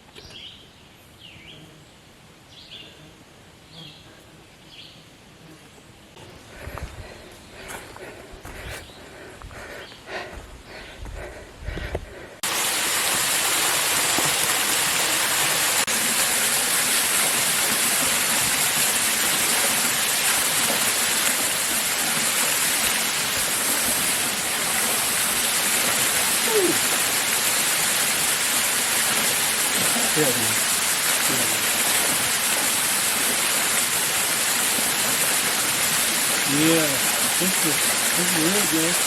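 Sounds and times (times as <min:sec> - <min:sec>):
waterfall rushing: 0:12.4 - 0:39.0.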